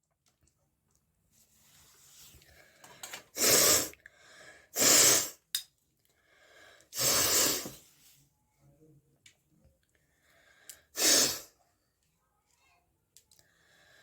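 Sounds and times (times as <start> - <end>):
soft in-breaths: 1.7 - 4.9, 6.0 - 8.1, 9.9 - 11.6, 13.3 - 14.0
person blowing air through nose: 3.3 - 4.0, 4.7 - 5.4, 7.0 - 7.8, 11.0 - 11.5.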